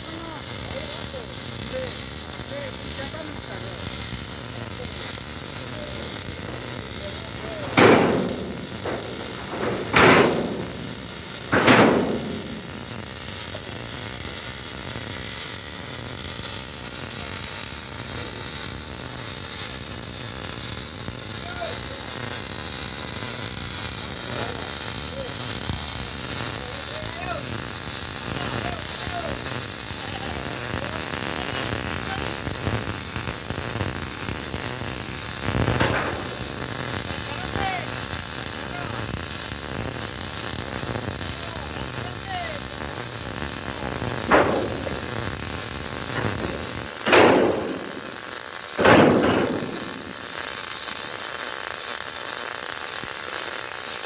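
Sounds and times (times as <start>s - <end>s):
steady hiss of site noise: 0.0s - 54.0s
hammer striking steel: 7.4s - 13.5s, 35.5s - 38.0s, 44.0s - 50.6s.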